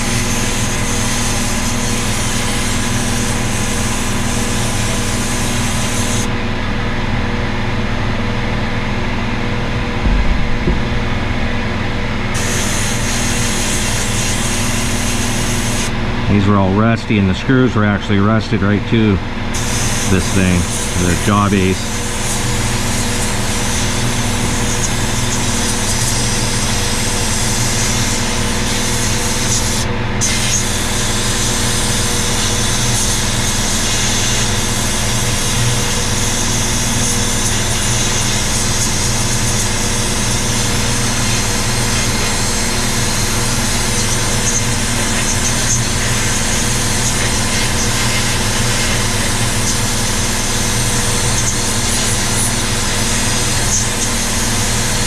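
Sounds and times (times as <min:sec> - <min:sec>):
workshop machine hiss: 0:00.0 - 0:06.4, 0:12.2 - 0:55.0
motor hum: 0:00.0 - 0:26.9.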